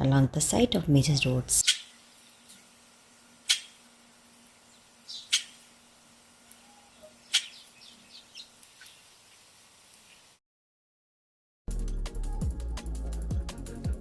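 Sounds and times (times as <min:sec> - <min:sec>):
bird chattering notes: 0:01.6 - 0:02.0, 0:03.4 - 0:03.8, 0:05.1 - 0:05.7, 0:06.6 - 0:09.0
birds calling loudly: 0:01.6 - 0:02.7, 0:03.4 - 0:03.9, 0:04.6 - 0:05.9, 0:06.6 - 0:09.5.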